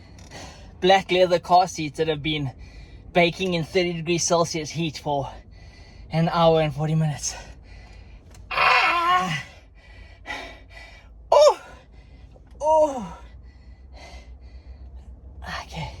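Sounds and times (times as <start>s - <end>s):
man yelping in pain: 8.5s - 9.5s.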